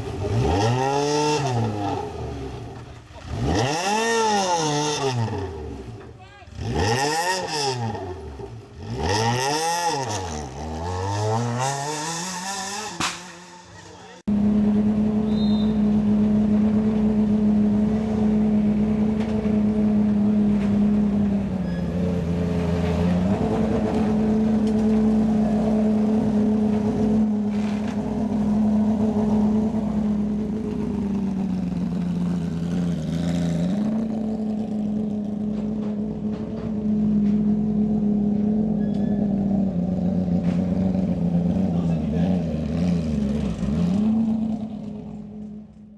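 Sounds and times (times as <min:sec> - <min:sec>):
rally car engine revving: 0:00.0 - 0:45.9.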